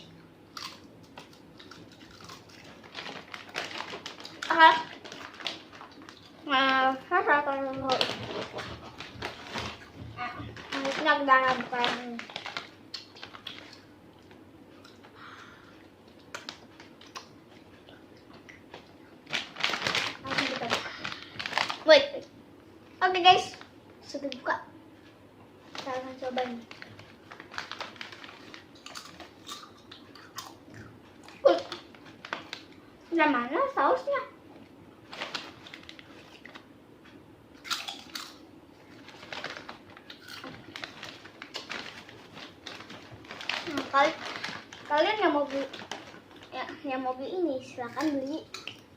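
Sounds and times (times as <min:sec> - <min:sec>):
plastic snack bag crinkling: 0:00.6 - 0:15.2, 0:18.7 - 0:22.2, 0:25.7 - 0:30.6, 0:31.2 - 0:32.8, 0:35.0 - 0:36.6, 0:37.6 - 0:48.9.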